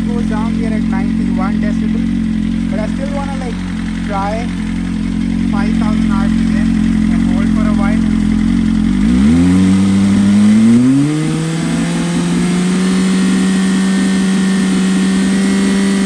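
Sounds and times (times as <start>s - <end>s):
motorcycle engine revving: 0.0s - 16.0s.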